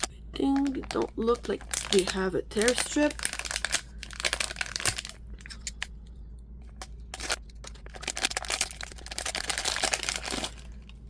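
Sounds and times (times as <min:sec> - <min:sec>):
plastic wrapper crinkling: 0:00.0 - 0:05.9, 0:06.7 - 0:11.0.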